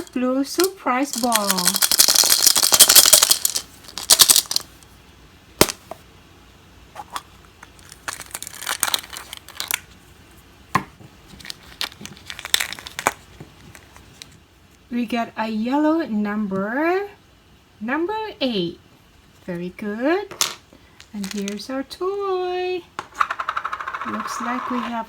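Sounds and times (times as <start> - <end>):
plastic wrapping crinkling and tearing: 7.8 - 9.8, 11.4 - 13.2.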